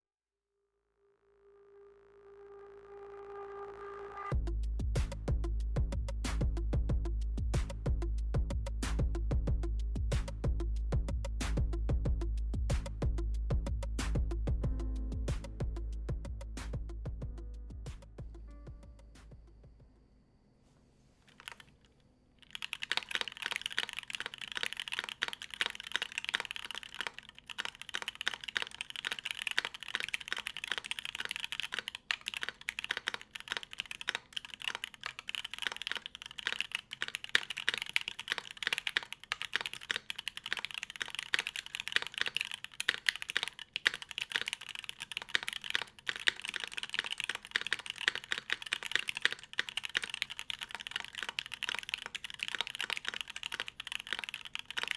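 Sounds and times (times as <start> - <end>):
fast mechanical keyboard typing: 21.3 - 21.7, 22.4 - 54.9.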